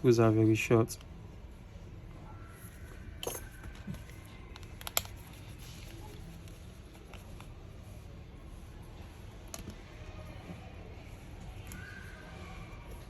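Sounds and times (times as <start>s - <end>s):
small screwdriver clicks and taps: 4.5s - 5.3s.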